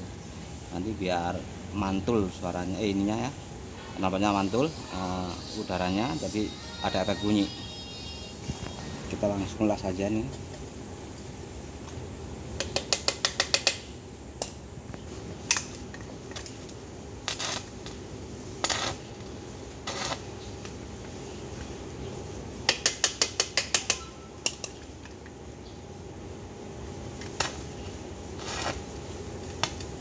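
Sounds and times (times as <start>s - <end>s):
sharp metallic welding clicks: 12.6s - 14.6s, 15.5s - 18.0s, 18.6s - 19.0s, 19.8s - 20.3s, 22.7s - 24.8s
welding arc hissing: 12.7s - 24.0s, 27.1s - 30.0s.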